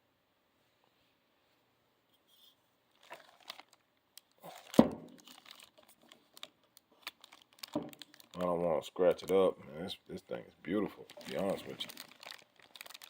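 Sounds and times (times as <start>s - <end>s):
packaging crinkling: 2.9s - 9.4s, 10.9s - 13.0s.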